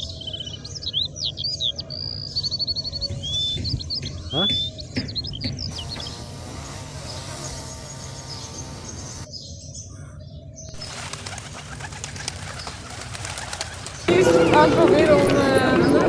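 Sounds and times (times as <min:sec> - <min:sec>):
birds calling: 0:00.0 - 0:16.0
wing flaps: 0:10.8 - 0:14.1.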